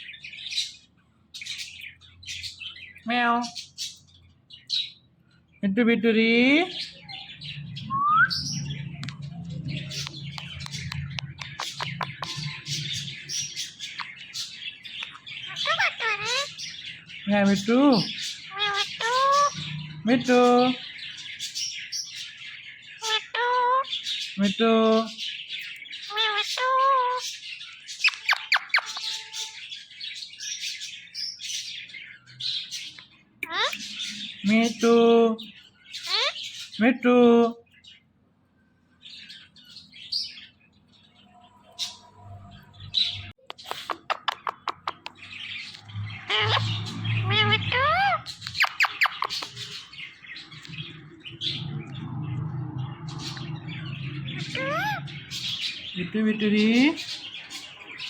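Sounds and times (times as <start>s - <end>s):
parrot chirps and squawks: 6.8s - 24.4s, 25.5s - 34.8s, 35.5s - 36.8s, 39.2s - 58.0s
parrot calls: 7.0s - 22.3s, 23.0s - 24.6s, 25.5s - 29.7s, 32.6s - 34.9s, 35.9s - 36.8s, 41.4s - 58.0s.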